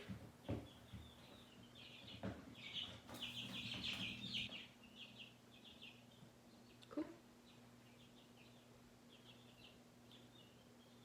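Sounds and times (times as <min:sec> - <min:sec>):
small bird chirping: 0:00.0 - 0:11.0.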